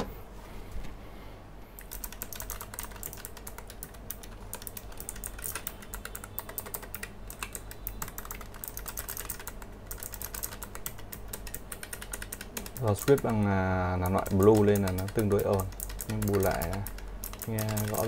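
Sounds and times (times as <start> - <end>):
mechanical keyboard typing clicks: 1.8 - 18.0.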